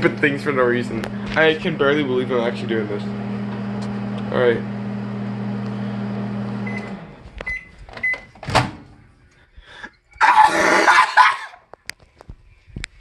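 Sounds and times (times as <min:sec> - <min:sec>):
microwave oven humming: 0:00.0 - 0:07.7.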